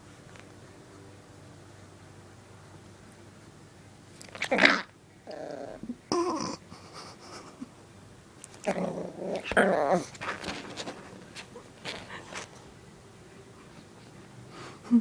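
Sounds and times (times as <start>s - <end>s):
puppy growling: 4.2s - 6.6s, 8.5s - 12.5s.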